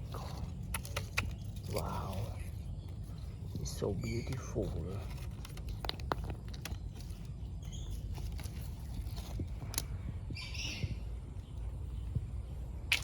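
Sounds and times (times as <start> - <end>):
bird chirp: 0.0 - 13.0
steady low rumble: 0.0 - 13.0
small clicks and rustles: 2.6 - 10.3.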